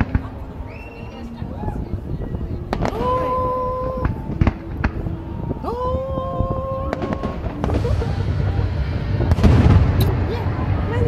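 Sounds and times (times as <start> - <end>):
steady whistle-like tone: 0.0 - 10.2
fireworks popping and banging: 6.9 - 11.0.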